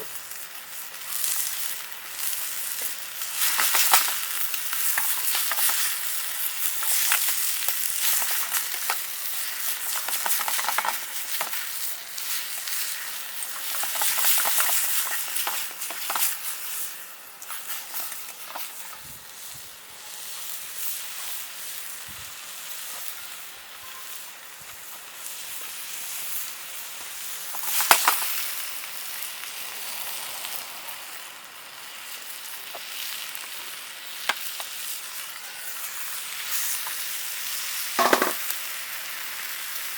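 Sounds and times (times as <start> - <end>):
food sizzling in a pan: 0.0 - 39.9
stirring and scraping in a pan: 2.2 - 19.0.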